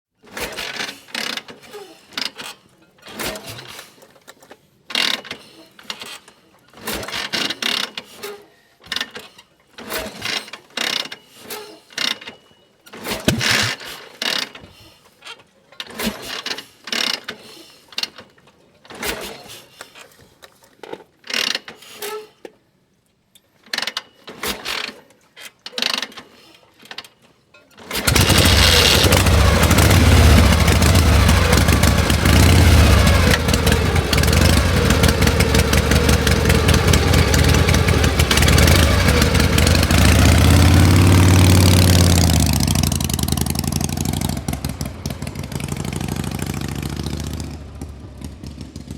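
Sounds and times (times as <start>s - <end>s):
metal gear shifter clunking: 13.0s - 13.9s
loud engine-like rumble: 28.0s - 48.9s.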